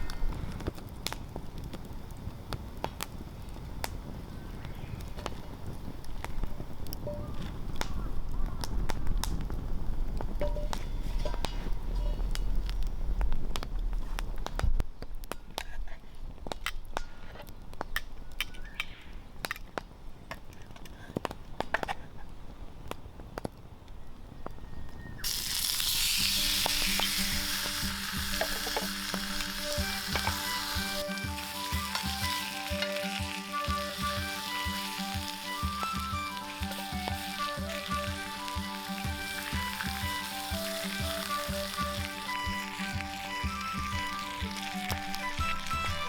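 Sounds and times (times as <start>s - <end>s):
campfire crackles: 0.0s - 46.0s
food sizzling in hot pan: 25.2s - 46.0s
background music: 25.9s - 46.0s.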